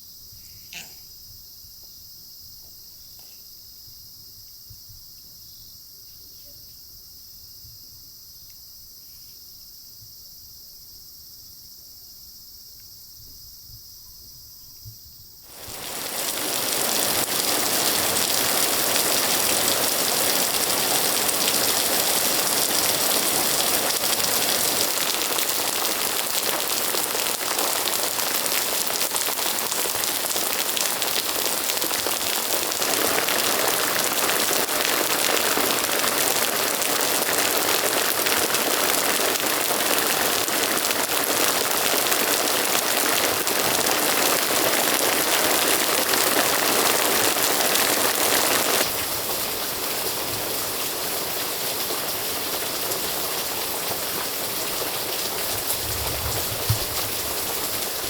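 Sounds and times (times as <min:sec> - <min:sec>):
insects trilling: 0:00.0 - 0:58.0
heavy rain pouring: 0:15.5 - 0:58.0.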